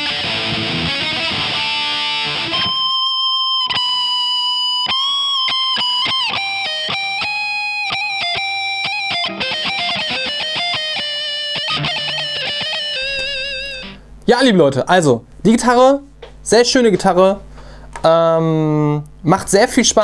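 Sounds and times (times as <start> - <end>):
distorted electric guitar: 0.0 - 14.2.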